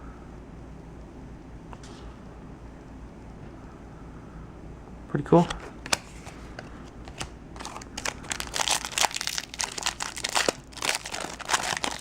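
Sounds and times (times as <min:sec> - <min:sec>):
foil wrapper crinkling: 0:07.0 - 0:12.0.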